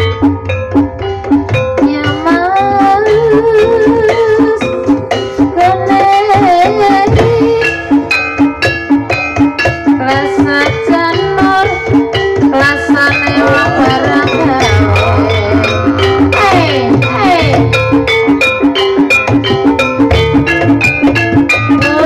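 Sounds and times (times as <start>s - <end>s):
tuned metal percussion melody: 0.0s - 22.0s
person singing: 1.8s - 4.9s, 12.5s - 17.6s
hand drum strokes: 8.6s - 22.0s.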